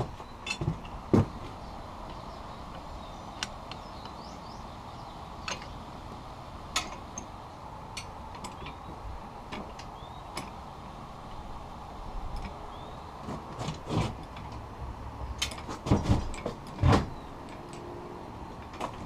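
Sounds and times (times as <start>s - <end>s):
steady background hiss: 0.0s - 19.0s
metal bender clicks and knocks: 6.7s - 8.8s, 15.4s - 17.9s.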